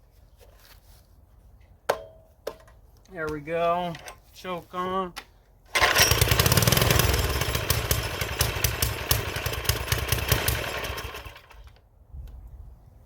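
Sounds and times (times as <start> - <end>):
small engine running on choke: 5.8 - 11.7.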